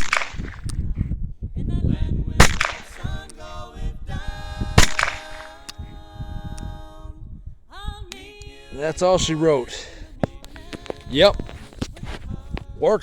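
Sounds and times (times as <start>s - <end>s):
revolver shot: 0.0s - 0.7s, 2.4s - 3.2s, 4.8s - 5.7s.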